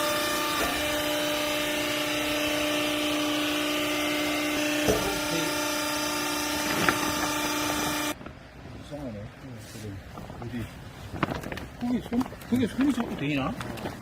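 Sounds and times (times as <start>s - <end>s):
hydraulic unit whining: 0.0s - 8.2s.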